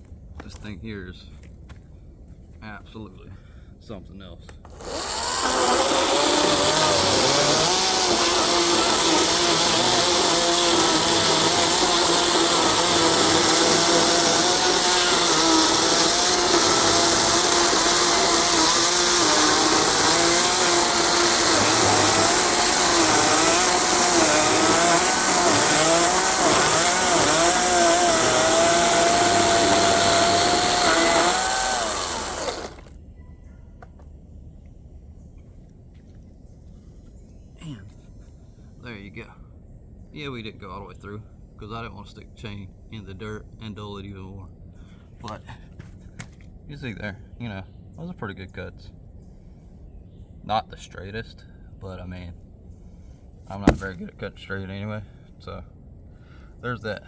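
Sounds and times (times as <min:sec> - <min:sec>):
chainsaw cutting log: 0:04.7 - 0:33.0, 0:53.5 - 0:54.0.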